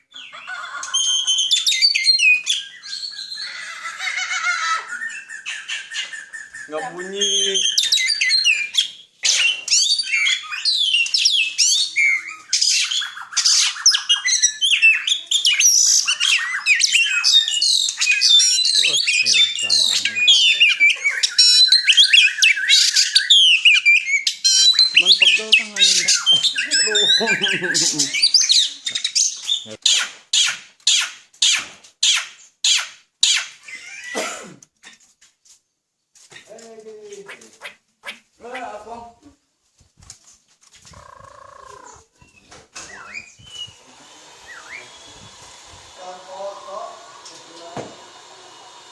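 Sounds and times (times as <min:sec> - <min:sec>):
songbird singing: 0:00.0 - 0:03.7, 0:04.8 - 0:29.8, 0:40.9 - 0:45.3
bird chirping: 0:00.0 - 0:34.2, 0:40.8 - 0:46.2
bird squawking harshly: 0:03.0 - 0:10.9, 0:11.6 - 0:28.7, 0:29.4 - 0:34.3, 0:40.9 - 0:42.1.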